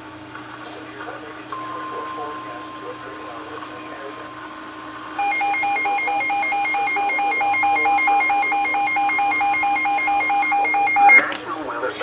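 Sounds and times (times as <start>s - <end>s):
steady warning alarm tone: 1.6s - 11.3s
rapid two-pitch beeping: 5.2s - 11.3s.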